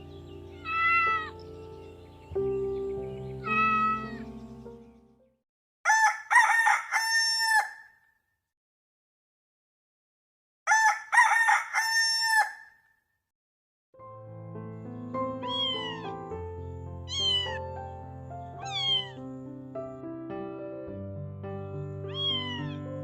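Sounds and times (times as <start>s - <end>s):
background music: 0.0s - 5.2s, 14.0s - 23.0s
cat meowing: 0.5s - 1.4s, 3.4s - 4.3s, 15.4s - 16.3s, 17.0s - 17.7s, 18.6s - 19.2s, 22.1s - 23.0s
rooster crowing: 5.9s - 8.0s, 10.7s - 12.8s.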